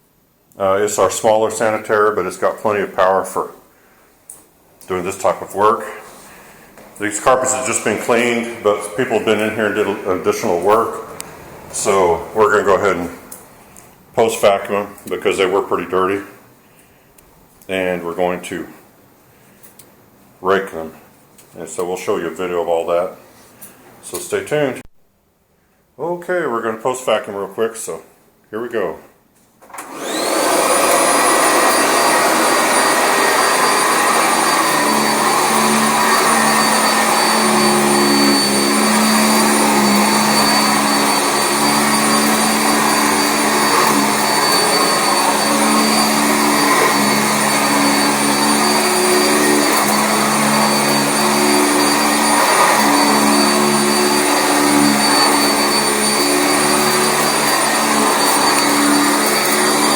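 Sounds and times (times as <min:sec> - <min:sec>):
upright vacuum motor whining: 0:05.1 - 0:13.3, 0:29.7 - 0:59.9.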